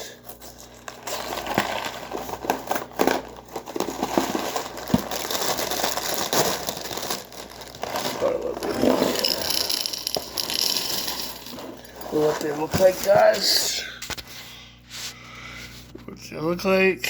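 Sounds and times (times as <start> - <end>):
plastic bag crinkling: 0.1 - 13.6.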